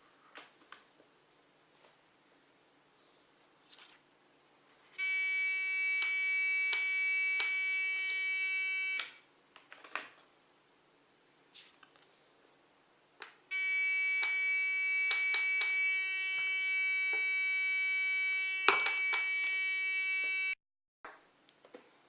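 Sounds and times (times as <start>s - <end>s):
high-pitched buzzer tone: 5.0s - 9.2s, 13.5s - 20.6s.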